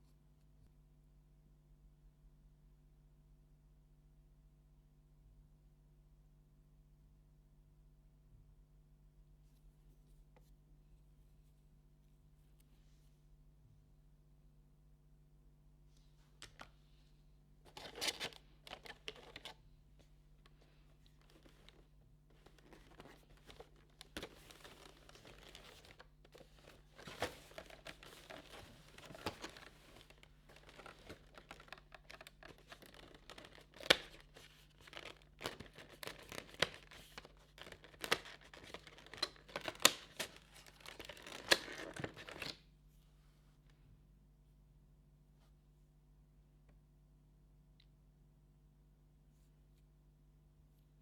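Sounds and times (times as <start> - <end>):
packaging tearing and crinkling: 17.7 - 19.6, 22.4 - 42.5.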